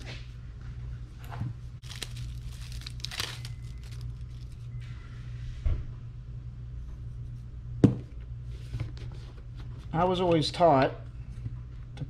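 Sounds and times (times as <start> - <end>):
steady low hum: 0.0 - 12.0
rustling handling noises: 1.2 - 4.8.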